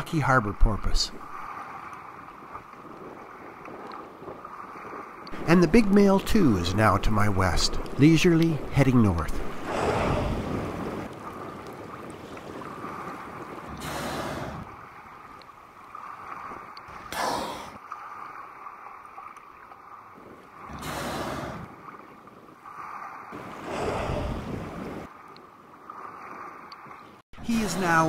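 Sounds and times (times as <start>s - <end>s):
water washing: 0.0s - 28.0s
wind: 0.0s - 28.0s
killer whale blowing: 9.6s - 15.0s, 16.0s - 18.3s, 20.5s - 22.0s, 22.6s - 25.1s.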